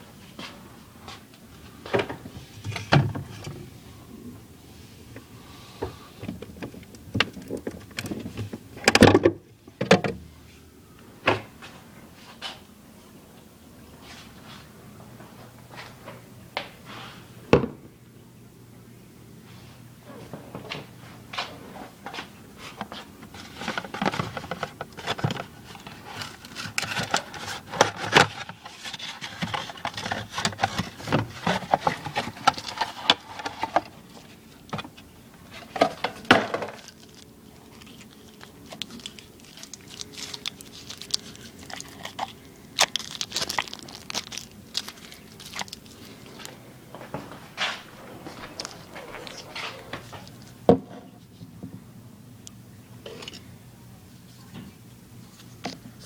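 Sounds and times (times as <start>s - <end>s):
plastic filter and packaging handling: 5.2s - 10.2s, 21.4s - 51.4s, 55.2s - 56.0s.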